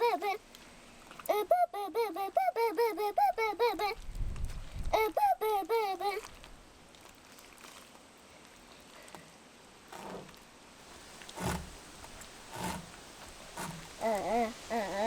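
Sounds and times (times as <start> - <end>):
child breathy vocal sounds: 1.3 - 4.0, 4.8 - 6.3, 14.0 - 15.0.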